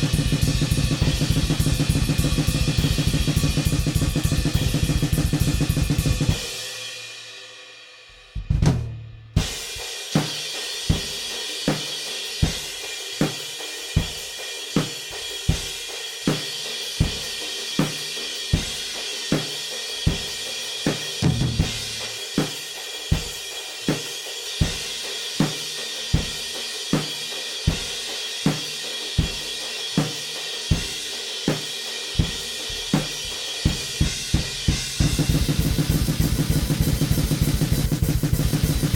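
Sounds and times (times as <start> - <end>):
drum fill: 8.3 - 9.9, 21.2 - 22.2, 31.5 - 38.9.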